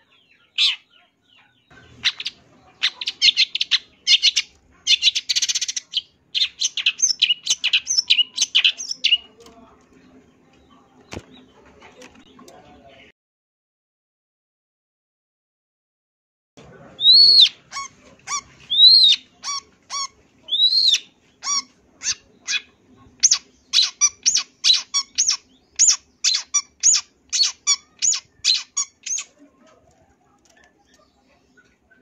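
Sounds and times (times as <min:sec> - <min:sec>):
bird whistled song: 0:02.0 - 0:09.2, 0:18.7 - 0:29.3.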